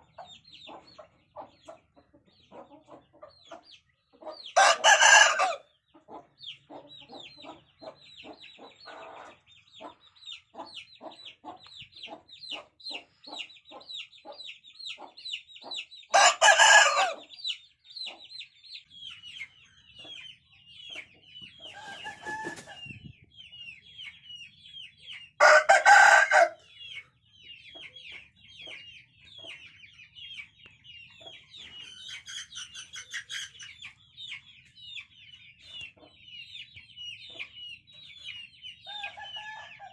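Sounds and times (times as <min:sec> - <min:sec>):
chickens clucking: 0:00.0 - 0:39.9
roosters crowing: 0:04.6 - 0:05.6, 0:16.1 - 0:17.3, 0:21.7 - 0:22.8, 0:25.4 - 0:26.6.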